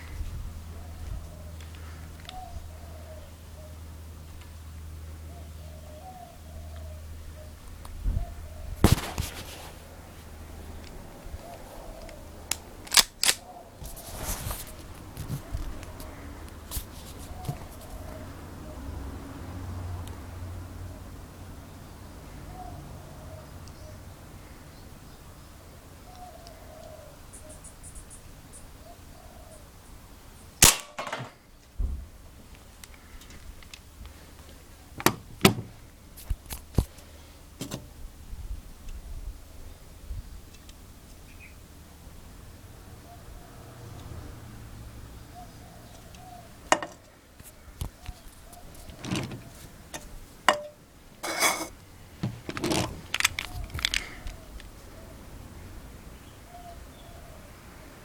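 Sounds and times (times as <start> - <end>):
clattering noises: 8.8 - 9.8, 37.6 - 37.9, 46.7 - 54.4
faint bird chirps: 26.0 - 30.6
airsoft pistol shot: 30.6 - 31.3.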